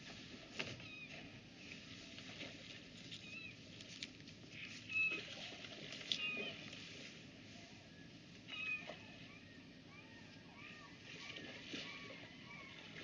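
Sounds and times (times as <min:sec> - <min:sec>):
gulls calling: 0:04.5 - 0:06.8, 0:07.5 - 0:13.0.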